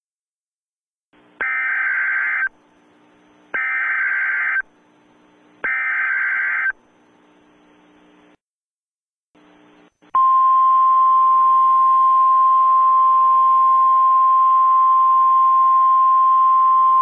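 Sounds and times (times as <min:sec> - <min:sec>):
radio hiss: 0:05.6 - 0:08.4.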